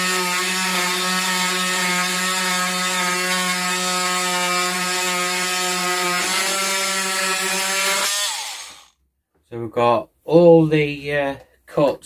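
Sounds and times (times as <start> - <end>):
oscillating multi-tool cutting pipe: 0.0 - 8.9.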